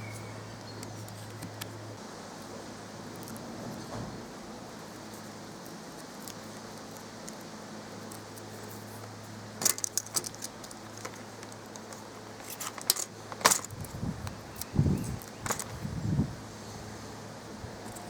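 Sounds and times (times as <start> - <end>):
steady low hum: 0.0 - 18.0
small hard objects clinking: 9.6 - 14.0.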